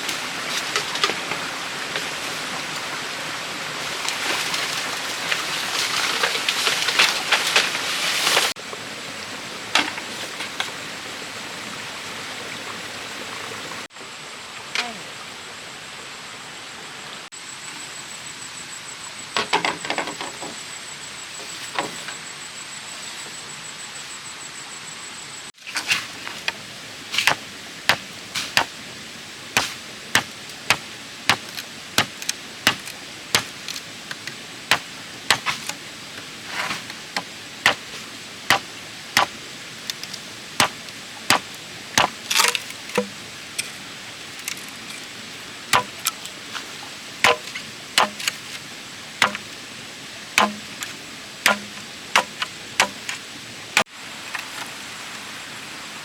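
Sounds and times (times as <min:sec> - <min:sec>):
tool striking bamboo: 0:27.2 - 0:28.7, 0:29.6 - 0:35.8, 0:36.6 - 0:43.2, 0:45.8 - 0:46.2, 0:47.2 - 0:48.6, 0:49.2 - 0:49.6, 0:50.4 - 0:53.2.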